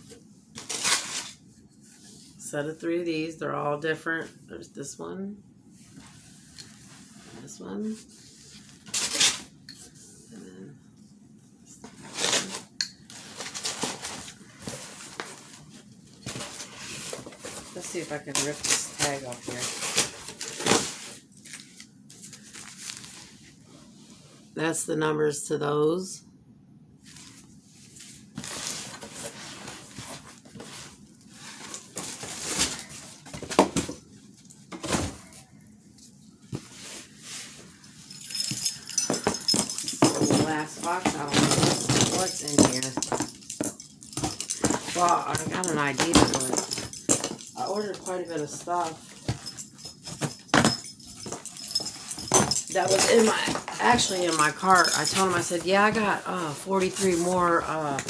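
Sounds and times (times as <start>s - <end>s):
packaging rustling and crinkling: 12.0s - 23.4s, 28.3s - 35.2s
items knocking: 38.2s - 56.2s.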